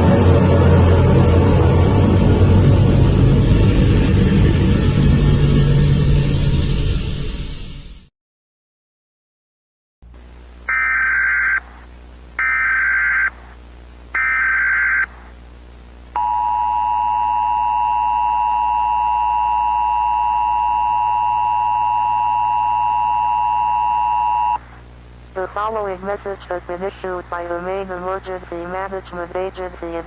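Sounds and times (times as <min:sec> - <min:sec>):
low steady hum: 0:10.1 - 0:30.0
harsh data bursts: 0:10.7 - 0:11.7, 0:12.4 - 0:13.5, 0:14.1 - 0:15.2.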